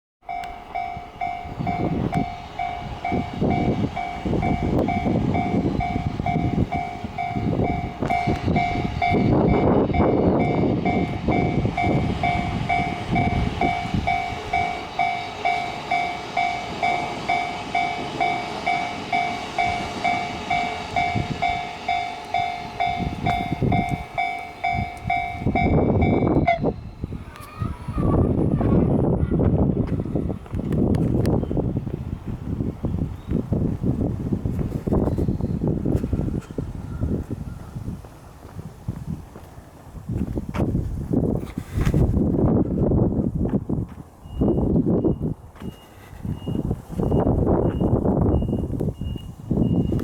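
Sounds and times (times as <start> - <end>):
train on rails: 0.2 - 50.0
level crossing bell ringing: 0.3 - 26.6.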